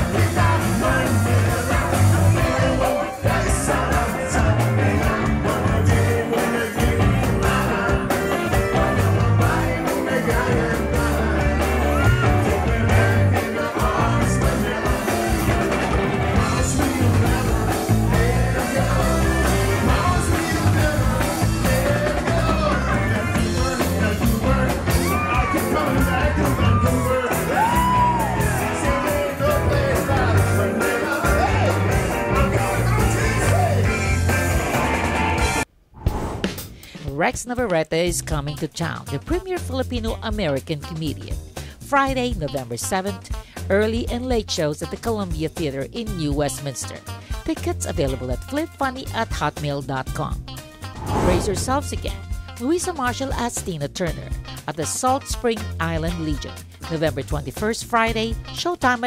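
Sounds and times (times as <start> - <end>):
person singing: 0.0 - 15.8, 16.4 - 34.2
band playing music: 0.0 - 35.6.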